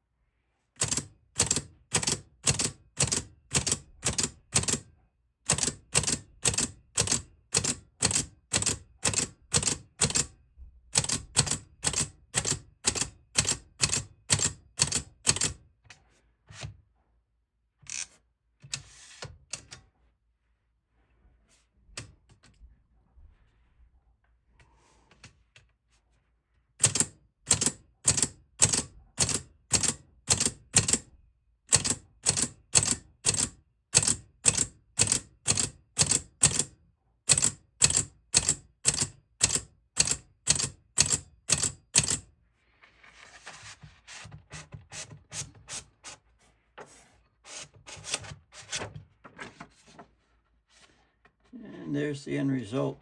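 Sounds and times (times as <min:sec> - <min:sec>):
typewriter keystrokes: 0:00.8 - 0:04.8, 0:05.5 - 0:10.3, 0:11.0 - 0:15.6, 0:26.8 - 0:31.0, 0:31.7 - 0:36.7, 0:37.3 - 0:42.2.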